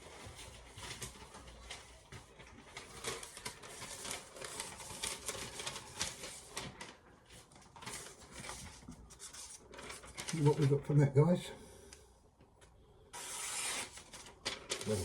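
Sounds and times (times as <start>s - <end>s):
paper rustling: 0.0s - 11.3s, 13.2s - 15.0s
knife slicing through paper: 13.2s - 15.0s.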